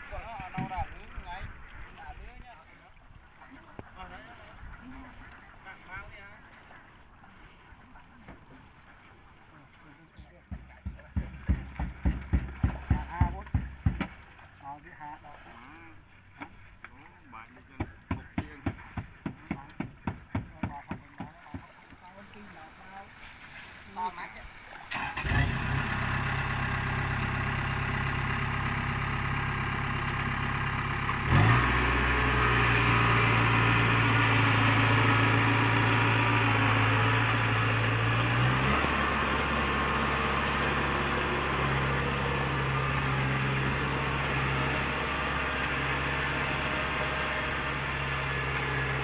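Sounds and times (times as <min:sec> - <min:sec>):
combine harvester diesel engine: 0:24.9 - 0:49.0.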